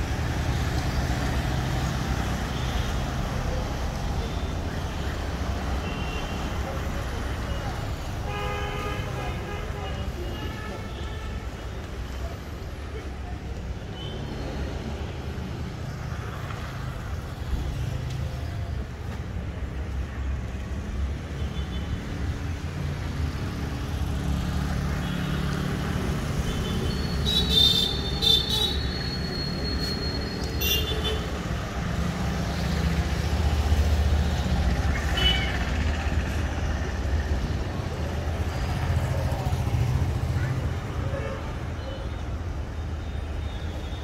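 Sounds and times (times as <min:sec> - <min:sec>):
vehicle engines running: 0:31.5 - 0:40.9.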